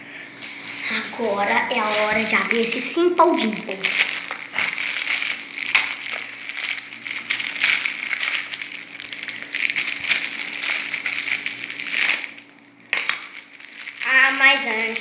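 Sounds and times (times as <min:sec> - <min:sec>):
plastic packaging crinkling: 0:00.3 - 0:15.0.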